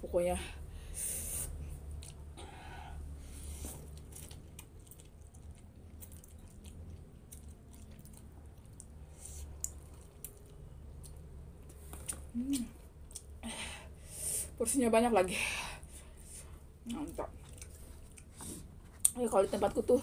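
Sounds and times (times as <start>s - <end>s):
low steady hum: 0.0s - 20.0s
wet chewing with mouth smacks: 3.7s - 13.3s, 16.8s - 19.2s.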